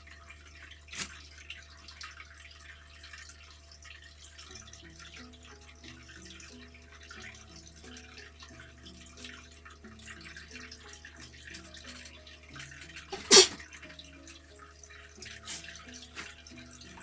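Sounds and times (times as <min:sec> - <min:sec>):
person sneezing: 0:13.2 - 0:13.6.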